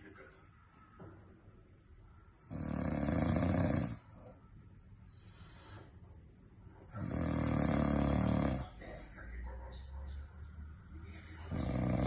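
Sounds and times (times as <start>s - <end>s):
man snoring loudly: 2.5s - 4.0s, 7.0s - 8.6s, 11.5s - 12.0s
quiet breathing: 3.9s - 9.1s.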